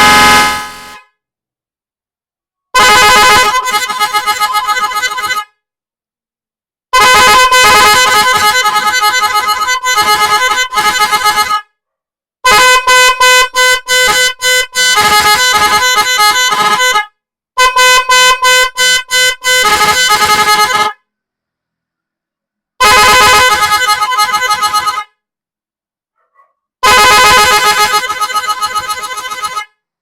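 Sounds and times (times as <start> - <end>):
pulsing vehicle horns: 0.0 - 1.1, 2.8 - 5.6, 7.0 - 11.8, 12.5 - 21.0, 22.8 - 25.2, 26.8 - 29.8.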